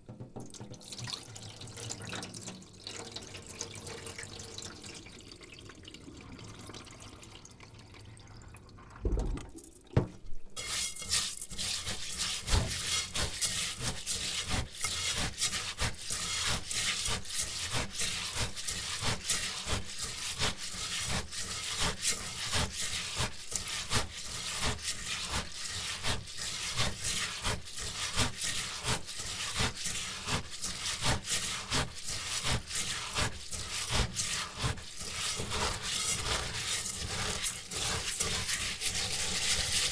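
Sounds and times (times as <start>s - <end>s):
knocks on a bowl: 0.0s - 0.8s
wet rice grains swishing: 10.6s - 39.9s.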